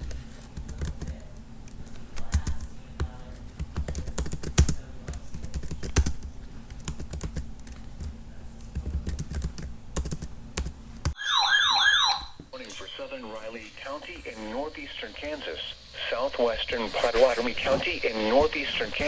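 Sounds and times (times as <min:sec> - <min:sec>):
laptop keyboard typing: 0:00.0 - 0:11.2
faint steady hum: 0:09.5 - 0:19.0.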